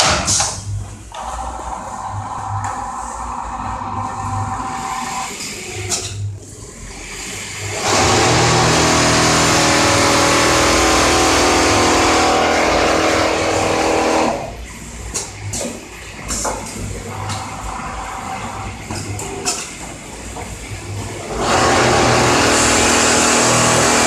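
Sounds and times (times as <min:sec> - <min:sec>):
sewing machine stitching: 0:07.7 - 0:14.5, 0:21.3 - 0:24.0.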